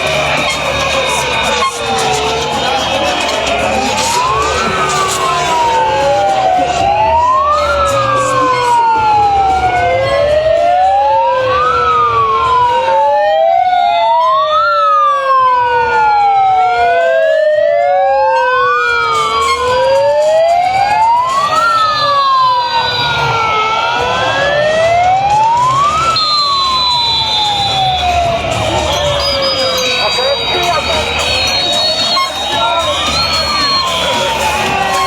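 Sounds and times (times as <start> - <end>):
fainter higher siren: 0.0 - 35.0
wailing siren: 0.0 - 35.0.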